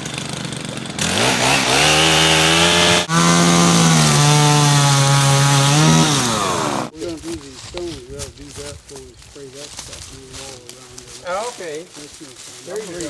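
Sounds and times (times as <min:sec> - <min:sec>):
chainsaw engine revving: 0:00.0 - 0:07.0.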